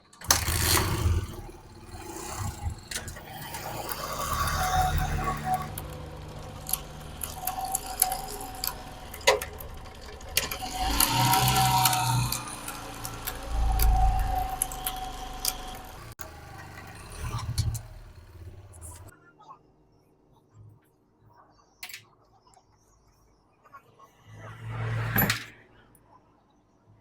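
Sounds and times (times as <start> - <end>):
drive chain rattling and clicking: 0.0 - 19.1
motorcycle engine running: 0.1 - 19.1.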